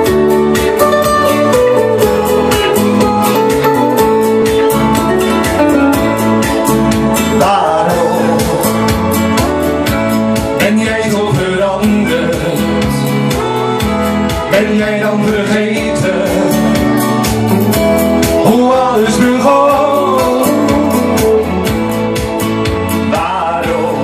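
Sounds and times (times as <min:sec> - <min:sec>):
melody line: 0:00.0 - 0:10.3
guitar: 0:00.0 - 0:24.0
pop ballad beat: 0:00.0 - 0:24.0.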